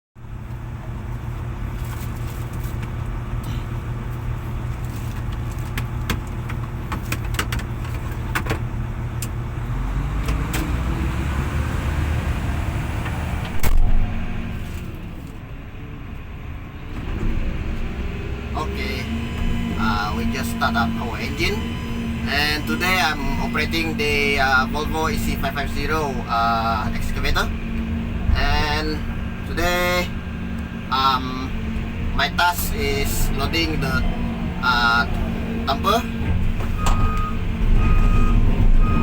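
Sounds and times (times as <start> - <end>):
heavy diesel machinery running: 0.2 - 39.0
loud thump: 13.5 - 14.4.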